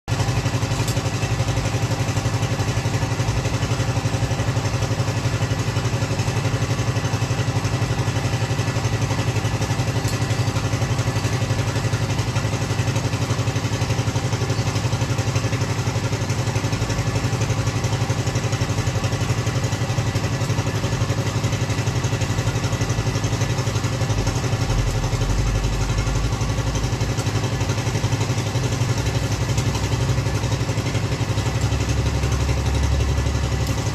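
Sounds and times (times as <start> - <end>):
machine engine running: 0.1 - 33.9
deep rumble: 24.1 - 27.2.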